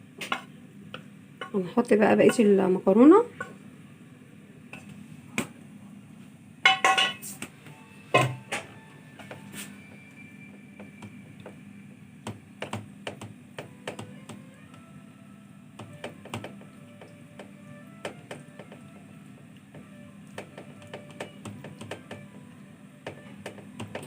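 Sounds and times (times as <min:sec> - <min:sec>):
metal spoon knocking cookware: 0:06.7 - 0:07.2.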